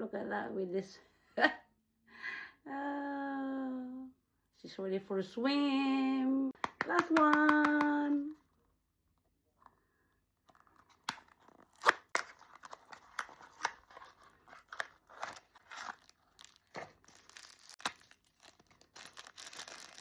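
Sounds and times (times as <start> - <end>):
toy packaging being torn open: 10.5 - 20.0.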